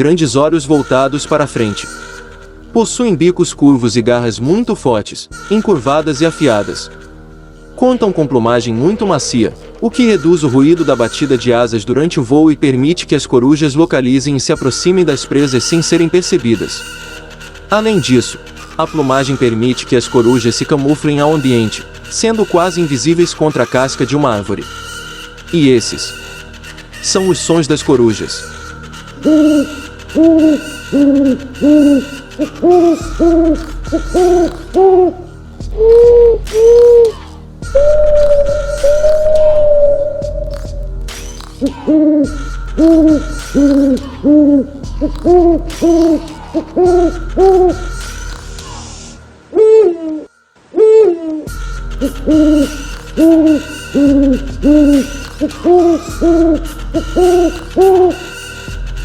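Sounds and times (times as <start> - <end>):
owl hooting: 0.6 - 2.6, 5.4 - 11.8, 24.6 - 41.0, 41.6 - 59.0.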